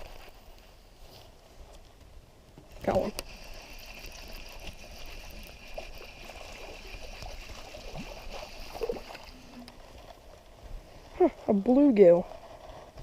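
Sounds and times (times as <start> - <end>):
water splashing and trickling: 0.0 - 0.8, 2.7 - 13.0.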